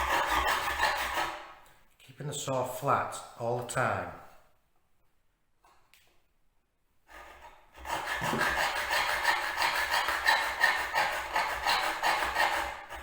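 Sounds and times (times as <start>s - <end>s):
hand saw cutting metal screw: 0.0s - 1.6s, 7.1s - 13.0s.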